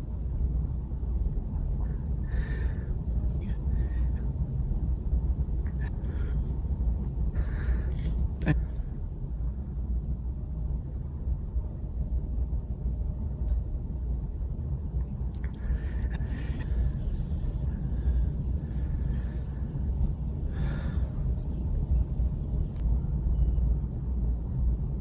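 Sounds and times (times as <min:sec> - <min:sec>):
steady low rumble: 0:00.0 - 0:25.0
man breathing quietly: 0:01.6 - 0:09.6, 0:15.4 - 0:23.8.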